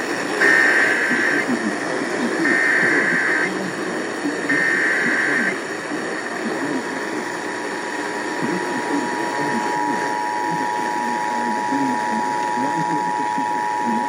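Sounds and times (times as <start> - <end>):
radio hiss: 0.0 - 14.0
screeching digital data bursts: 0.4 - 1.6, 2.3 - 3.6, 4.4 - 5.6.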